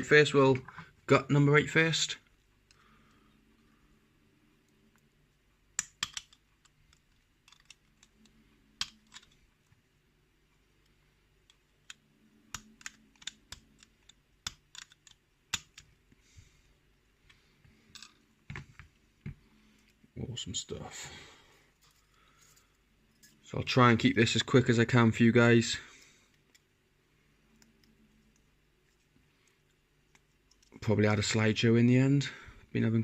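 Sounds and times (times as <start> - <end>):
small metal clicks and taps: 5.8 - 9.4, 11.4 - 15.9.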